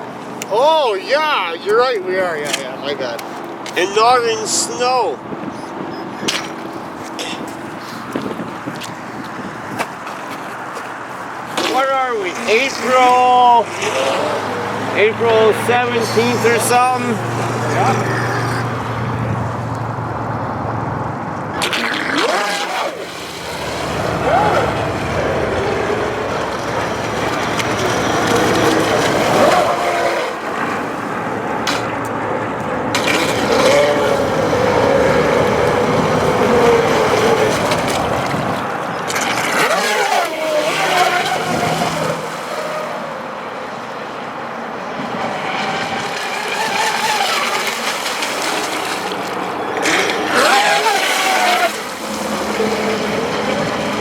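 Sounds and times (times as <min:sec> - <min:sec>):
rc boat motor whine: 0:11.6 - 0:54.0
rushing water: 0:21.4 - 0:32.1, 0:32.7 - 0:54.0.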